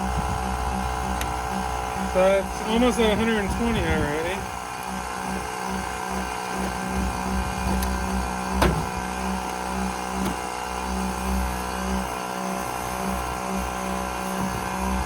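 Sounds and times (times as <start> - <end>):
air compressor running: 0.0 - 15.0.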